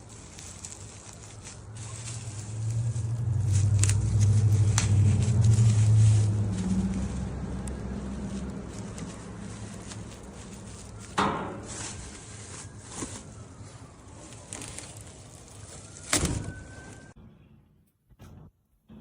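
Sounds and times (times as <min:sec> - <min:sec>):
low background rumble: 0:00.0 - 0:14.2.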